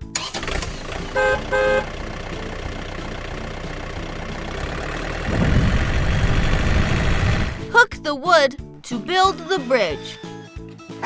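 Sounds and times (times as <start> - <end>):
truck engine running: 0.0 - 7.8.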